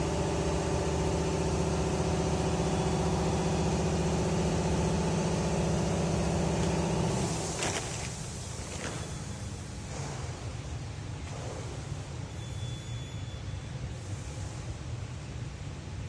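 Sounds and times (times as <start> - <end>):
diesel engine under load: 0.0 - 12.8.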